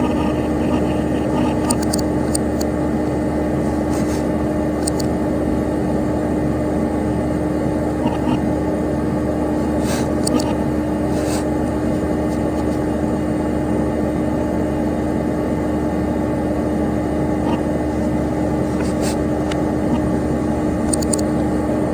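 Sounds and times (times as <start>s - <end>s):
computer fan whirring: 0.0s - 21.9s
constant hum: 0.0s - 21.9s
faint clicks: 1.6s - 2.7s, 20.9s - 21.3s.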